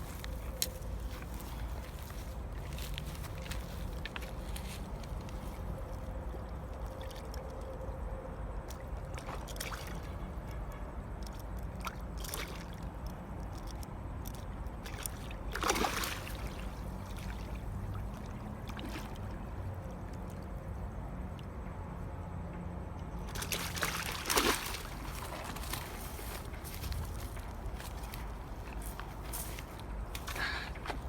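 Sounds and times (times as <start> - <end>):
water sloshing and splashing: 0.0 - 8.0, 8.6 - 21.5, 23.2 - 31.0.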